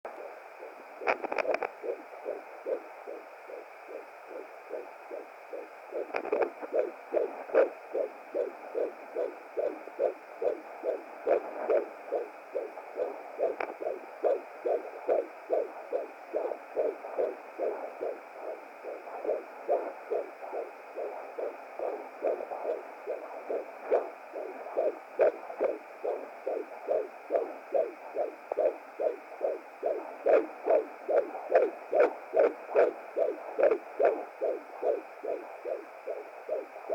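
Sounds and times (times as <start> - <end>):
fetal heartbeat on doppler: 0.1 - 36.9
steady hiss: 0.1 - 36.9.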